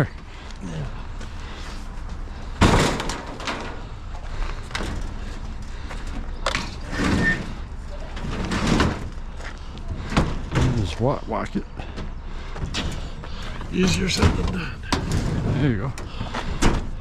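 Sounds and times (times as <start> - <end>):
heavy appliance banging: 2.5 - 3.9.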